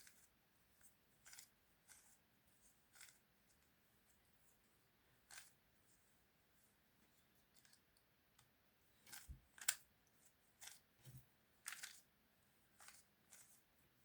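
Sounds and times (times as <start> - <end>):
plastic puzzle pieces clicking: 9.0 - 9.8, 11.6 - 12.0.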